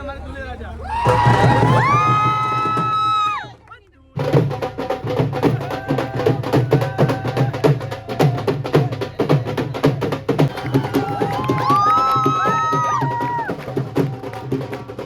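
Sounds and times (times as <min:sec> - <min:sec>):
dhol drumming: 0:00.9 - 0:15.0.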